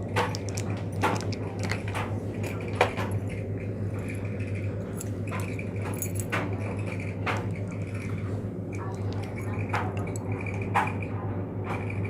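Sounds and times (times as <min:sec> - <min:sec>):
steady low hum: 0:00.0 - 0:12.0
clicks and taps handling slime: 0:00.1 - 0:02.1.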